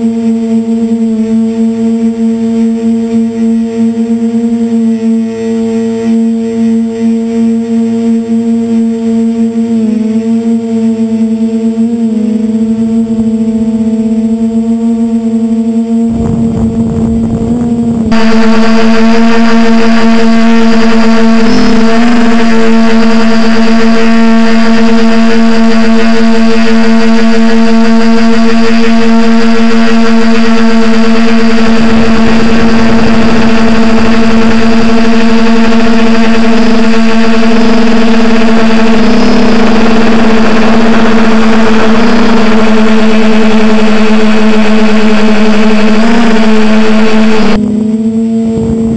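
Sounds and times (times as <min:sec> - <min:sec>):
drone motors whining: 0:00.0 - 0:48.9
rush of air noise: 0:16.0 - 0:21.9, 0:30.9 - 0:37.1.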